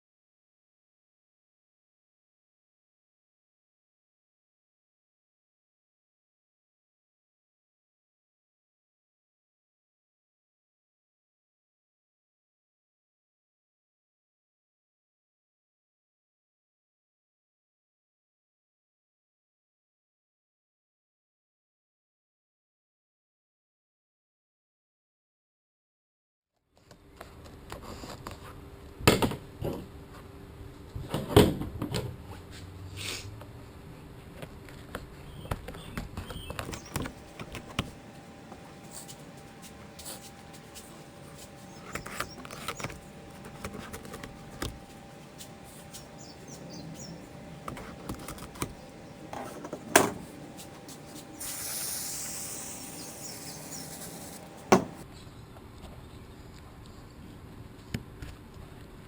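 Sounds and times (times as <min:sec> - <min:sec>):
faint steady hum: 0:36.6 - 0:55.0
handling knocks and thumps: 0:36.7 - 0:51.2, 0:54.4 - 0:55.0
hiss: 0:50.0 - 0:55.0.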